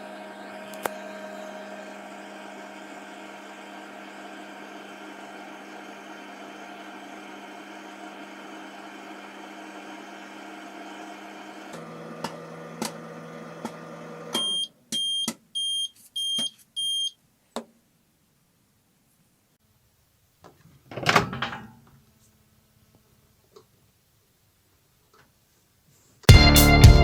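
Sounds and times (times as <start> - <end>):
microwave oven humming: 0.0 - 17.1
short high beeps: 14.4 - 17.2.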